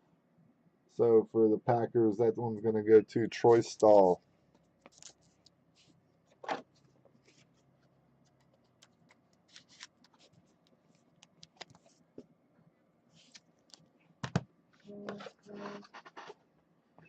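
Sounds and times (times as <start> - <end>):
trading cards rustling and clicking: 4.8 - 5.5, 8.2 - 11.9.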